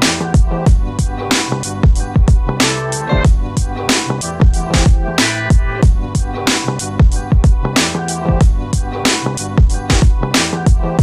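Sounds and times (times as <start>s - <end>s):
background music with steady beat: 0.0s - 11.0s
pounding low drum: 1.8s - 2.6s, 3.2s - 3.8s, 4.4s - 6.3s, 7.0s - 8.9s.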